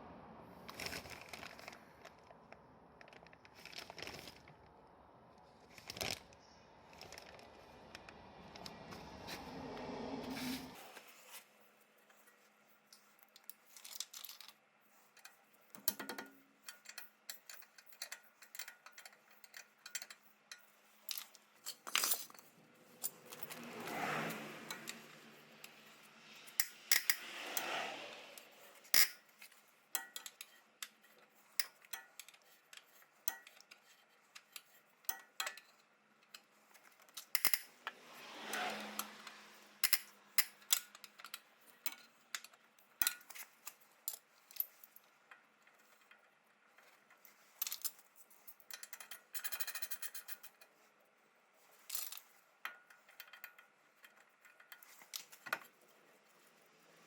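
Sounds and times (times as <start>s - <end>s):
metal tools clinking and knocking: 15.2s - 23.8s, 28.7s - 37.8s.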